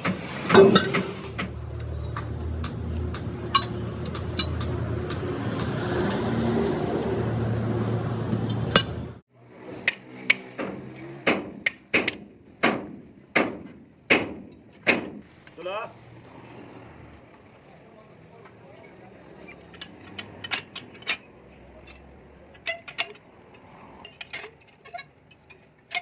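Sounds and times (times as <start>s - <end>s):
hammer blows on steel: 0.0s - 7.4s.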